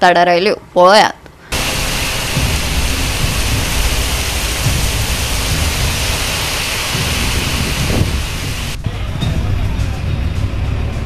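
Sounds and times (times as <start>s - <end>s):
heavy rain pouring: 1.5s - 8.8s
low uneven rumble: 1.6s - 11.0s.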